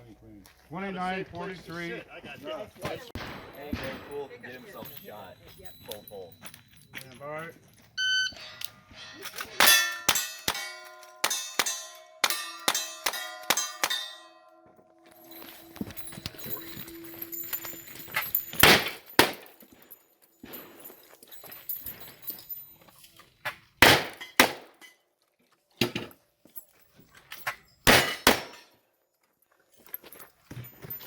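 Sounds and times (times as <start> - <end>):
gunshots: 3.2 - 4.3, 18.6 - 19.5, 23.8 - 24.7, 27.9 - 28.6
steel targets ringing: 8.0 - 19.6.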